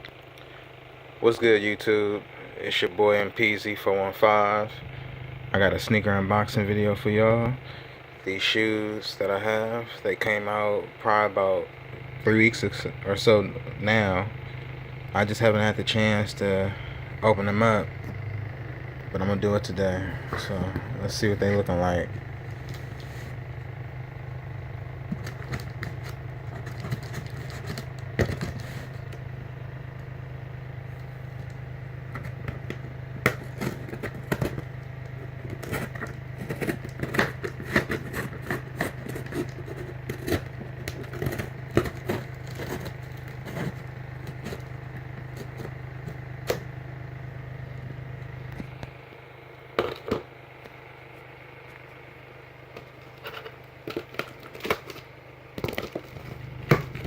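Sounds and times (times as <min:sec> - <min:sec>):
low hum: 0:00.0 - 0:57.0
packaging being handled: 0:25.1 - 0:29.2, 0:32.2 - 0:46.2.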